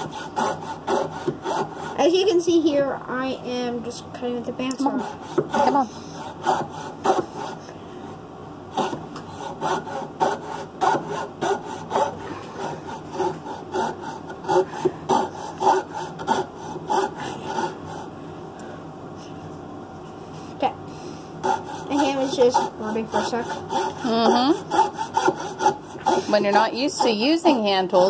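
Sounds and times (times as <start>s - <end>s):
hand saw rasping through wood: 0.0s - 2.1s, 4.8s - 7.6s, 8.7s - 18.1s, 21.4s - 28.0s.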